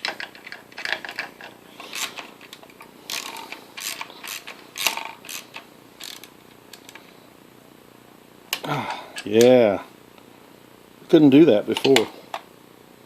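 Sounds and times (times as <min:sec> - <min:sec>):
wrench clicking on bolt: 0:03.1 - 0:07.0.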